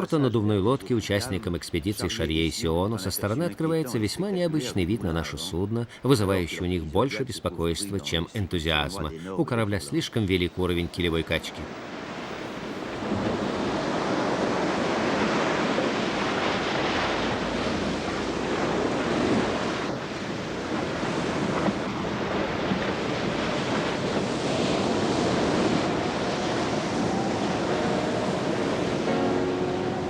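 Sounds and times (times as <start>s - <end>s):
heavy waves washing: 0.0s - 30.0s
gusting wind: 11.6s - 30.0s.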